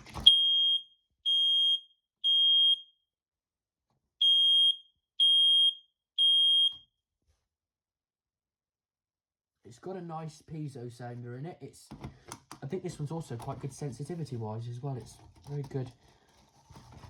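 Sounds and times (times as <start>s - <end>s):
smoke detector beeping: 0.3s - 2.8s, 4.2s - 6.8s.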